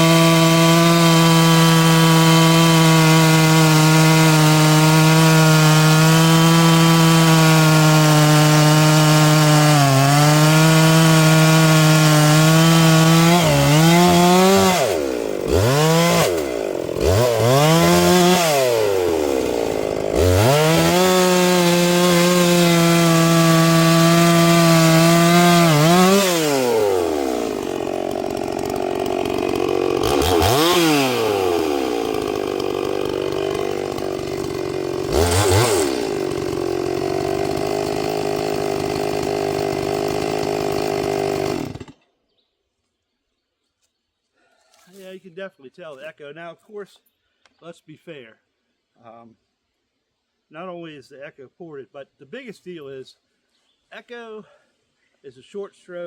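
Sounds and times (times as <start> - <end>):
chainsaw cutting wood: 0.0 - 42.2.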